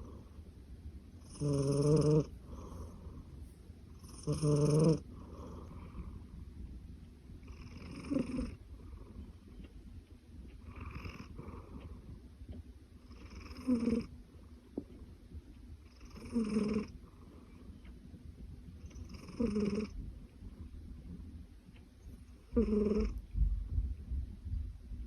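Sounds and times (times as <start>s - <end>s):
cat purring: 0.0s - 0.5s, 1.1s - 25.0s
cat throaty breaths: 10.6s - 12.3s.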